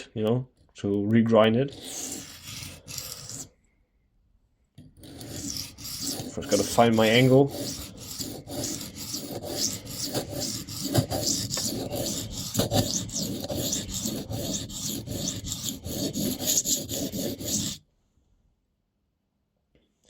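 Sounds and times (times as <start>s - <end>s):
blade scraping on sharpening stone: 1.7s - 3.5s, 4.9s - 17.8s.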